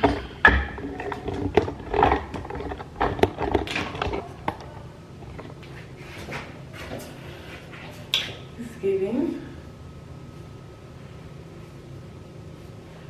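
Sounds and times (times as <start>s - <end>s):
sharp knocks and clicks: 0.0s - 4.7s.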